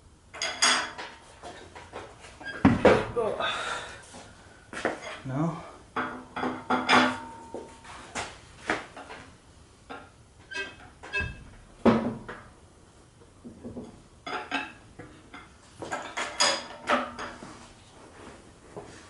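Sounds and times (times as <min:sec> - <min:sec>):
metal clanks and knocks: 0:06.0 - 0:07.5, 0:09.9 - 0:12.5, 0:13.4 - 0:17.5.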